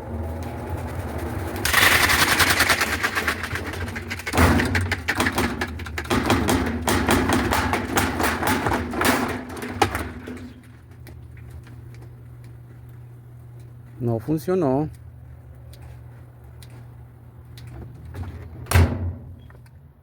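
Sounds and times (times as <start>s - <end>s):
washing machine tub rattling: 0.5s - 10.8s.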